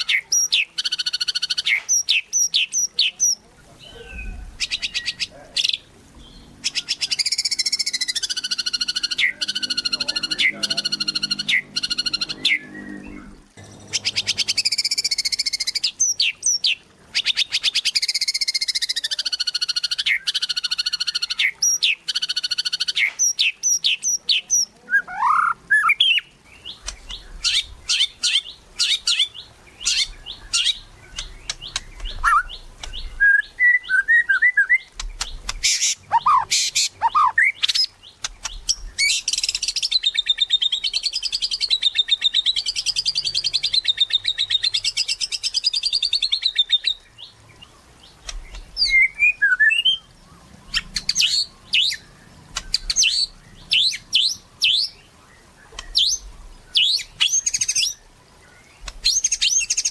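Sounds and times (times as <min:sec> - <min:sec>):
songbird singing: 0:00.0 - 0:59.9
fast wavering bird trill: 0:06.7 - 0:12.8.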